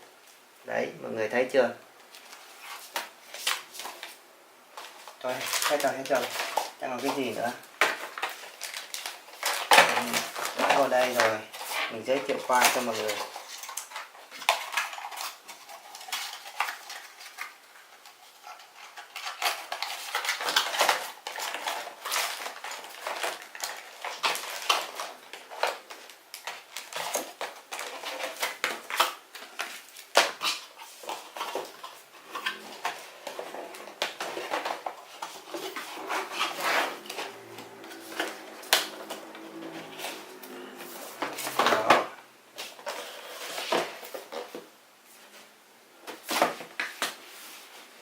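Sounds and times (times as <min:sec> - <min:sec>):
cardboard boxes and packaging handled: 0:02.0 - 0:48.0.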